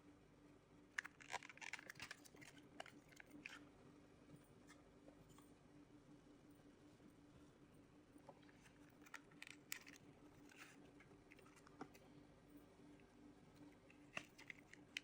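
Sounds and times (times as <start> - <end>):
faint steady hum: 0.0 - 15.0
packaging clicks and rustles: 1.0 - 3.6, 8.6 - 12.0, 13.9 - 15.0.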